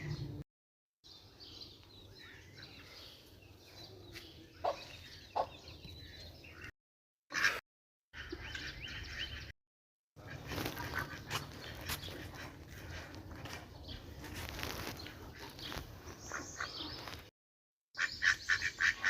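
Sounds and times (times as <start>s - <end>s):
outdoor background: 0.0s - 17.3s, 18.0s - 19.0s
ducks quacking: 7.3s - 7.6s, 8.2s - 9.5s, 10.2s - 14.2s, 15.0s - 17.1s, 18.0s - 19.0s.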